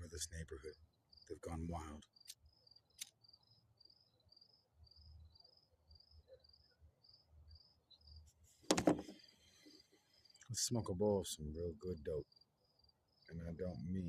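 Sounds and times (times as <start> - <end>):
crickets chirping: 0.0 - 14.0.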